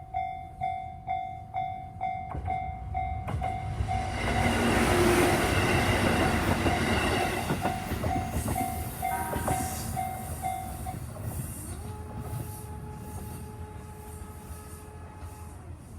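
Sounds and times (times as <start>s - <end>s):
crossing warning bell ringing: 0.0s - 12.0s
train rumbling and clattering: 0.6s - 15.9s.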